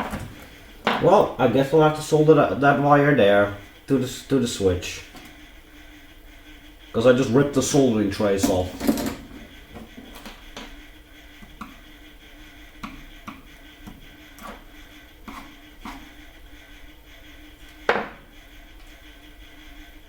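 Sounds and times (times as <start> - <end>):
knock on workbench: 17.9 - 18.2.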